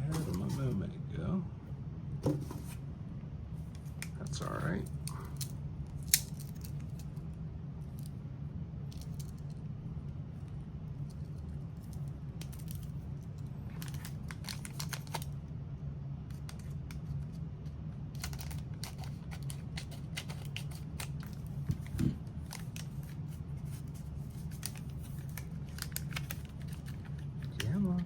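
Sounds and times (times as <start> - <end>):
steady low hum: 0.0 - 28.0
packaging tearing and crinkling: 13.6 - 15.4, 18.1 - 27.8.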